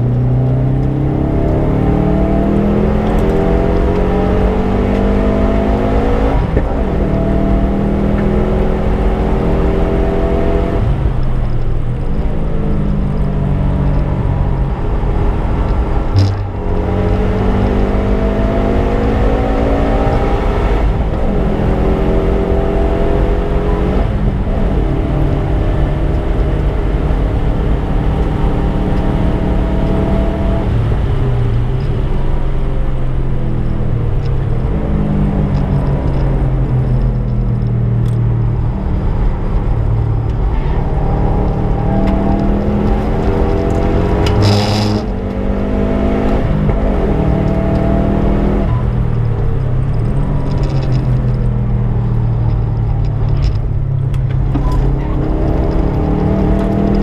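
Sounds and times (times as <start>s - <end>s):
car engine accelerating through gears: 0.0s - 57.0s.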